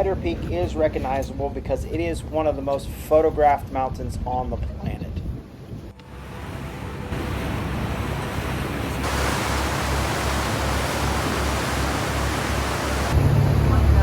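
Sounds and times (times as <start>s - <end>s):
water rushing: 6.1s - 14.0s
low engine throb: 9.0s - 14.0s.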